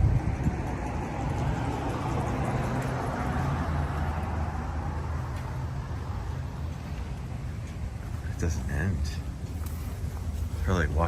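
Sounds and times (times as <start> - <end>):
low engine hum: 0.0 - 11.0
vehicle passing: 0.0 - 11.0.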